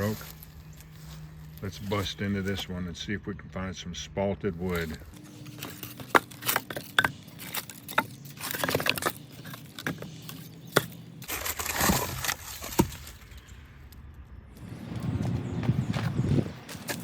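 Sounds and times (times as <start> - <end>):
wood crunching and crumbling: 0.0 - 3.7, 4.4 - 17.0
wood cracking and snapping: 5.7 - 14.2.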